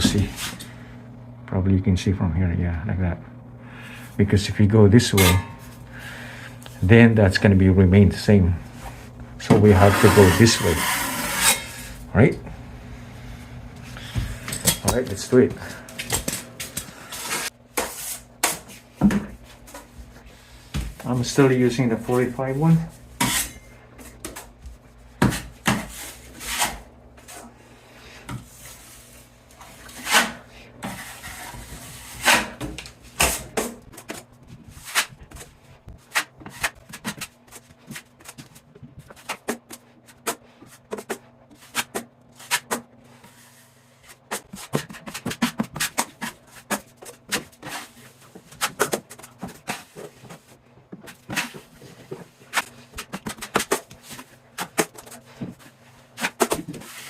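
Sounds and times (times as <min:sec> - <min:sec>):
drywall knife scraping compound: 0:09.5 - 0:12.0, 0:25.2 - 0:27.5, 0:28.5 - 0:57.0.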